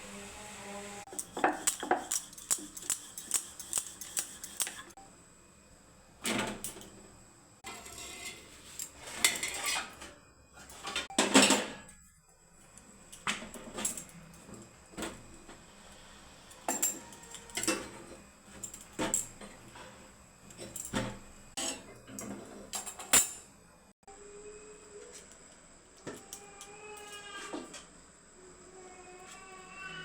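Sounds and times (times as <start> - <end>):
utensils and dishes clinking: 7.6 - 12.1, 16.5 - 23.5.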